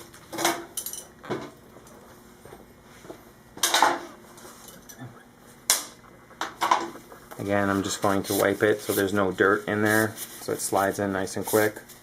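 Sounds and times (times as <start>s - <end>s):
metal tools clinking and scraping: 0.4s - 1.1s, 3.6s - 5.0s.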